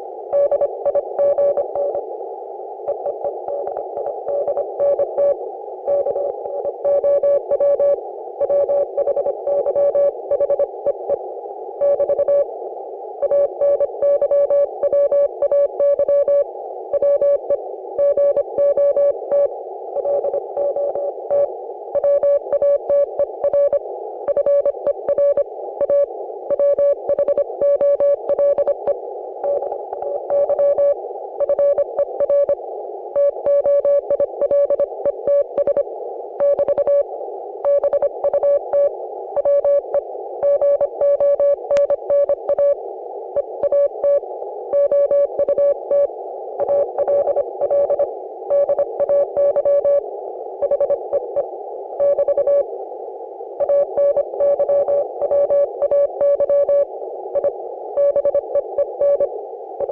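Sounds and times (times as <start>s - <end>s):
receiver hiss: 0.0s - 59.9s
morse code tone: 53.6s - 59.9s.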